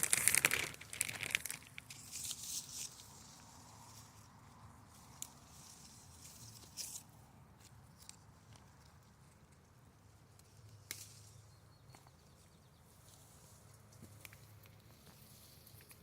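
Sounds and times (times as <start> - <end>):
leaves brushing: 0.0 - 9.0.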